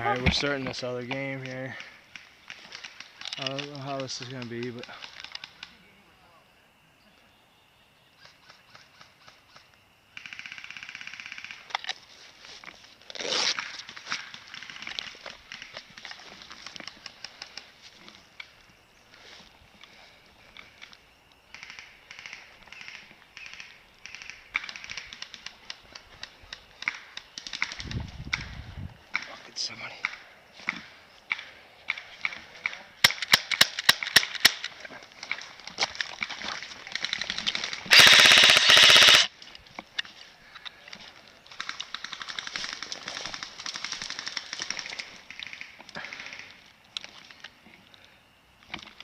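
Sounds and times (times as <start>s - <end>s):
sharp irregular clicks: 30.0s - 34.7s, 36.9s - 39.3s
airsoft gun burst: 37.9s - 39.3s
distant rapid airsoft fire: 37.9s - 39.3s.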